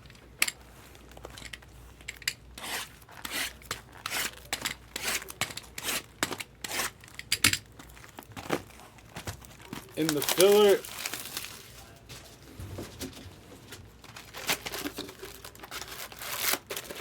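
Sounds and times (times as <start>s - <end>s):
plastic wrap ripping and crinkling: 3.0s - 12.1s, 14.0s - 17.0s.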